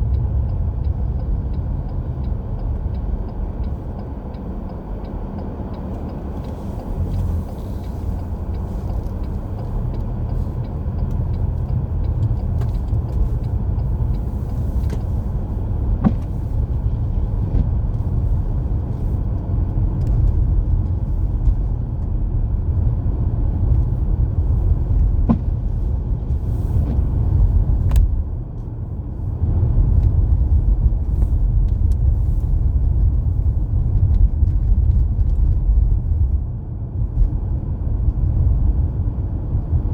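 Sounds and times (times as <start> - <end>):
car road and engine noise inside: 0.0 - 39.9.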